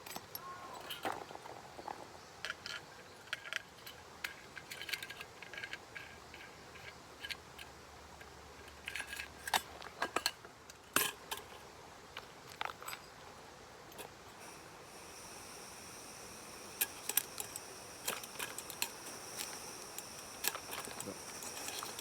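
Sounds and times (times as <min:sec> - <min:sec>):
light clicks and clinks: 0:13.9 - 0:22.0.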